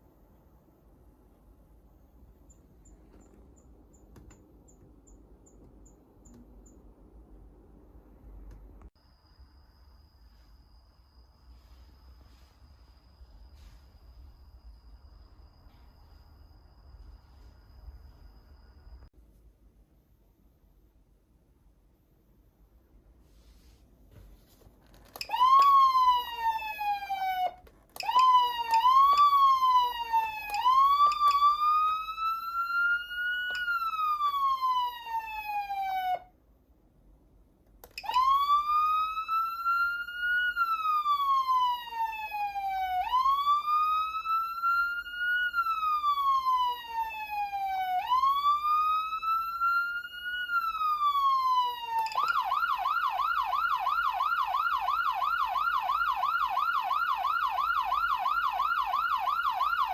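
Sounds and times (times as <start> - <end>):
electronic siren wail: 25.2 - 36.3, 38.0 - 59.9.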